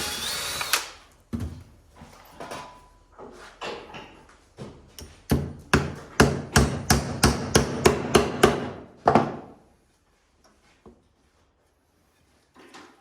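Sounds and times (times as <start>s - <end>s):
hammer striking wood: 5.3s - 9.5s.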